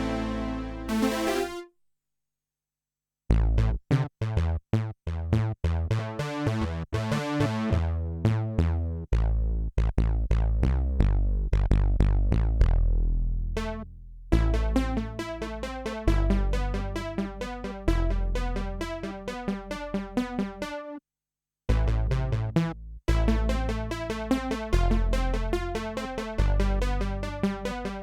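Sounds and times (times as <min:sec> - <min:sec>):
deep synth bass: 0:00.0 - 0:01.6, 0:03.3 - 0:20.8, 0:21.7 - 0:28.0
held synthesizer sound: 0:00.0 - 0:01.7
percussive synthesizer notes: 0:00.0 - 0:01.7, 0:14.4 - 0:20.8.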